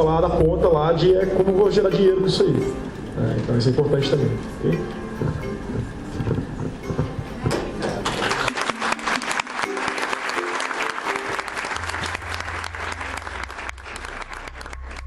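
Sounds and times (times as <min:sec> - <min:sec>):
bass line: 0:00.0 - 0:08.0, 0:11.4 - 0:15.0
music playing: 0:00.0 - 0:15.0
audience applauding: 0:05.2 - 0:15.0.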